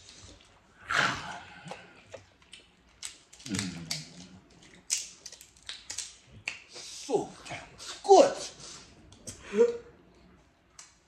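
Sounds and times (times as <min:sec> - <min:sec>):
shellfish shells cracking: 0:02.1 - 0:06.6.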